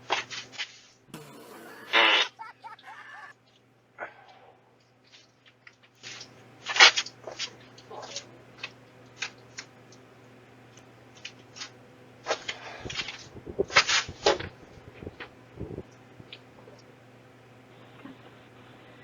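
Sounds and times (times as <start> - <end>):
faint electrical hum: 0.0 - 19.0.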